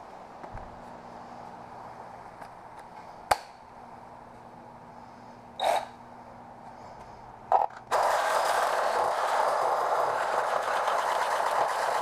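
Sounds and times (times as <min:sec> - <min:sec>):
handheld power tool running: 0:07.9 - 0:12.0.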